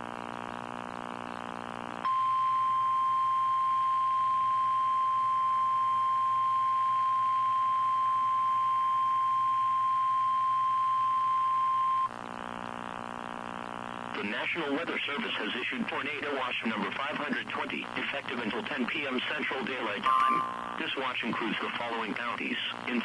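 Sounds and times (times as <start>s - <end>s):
steady alarm tone: 20.1s - 20.8s.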